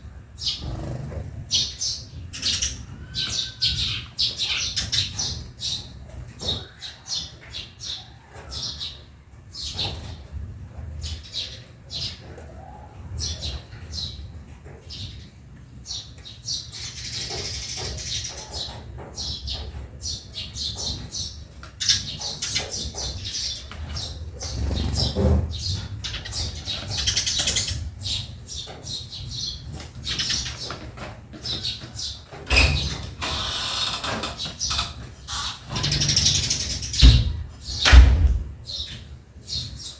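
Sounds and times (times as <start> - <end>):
sparrows chirping: 0.0 - 39.9
low background rumble: 35.8 - 38.8.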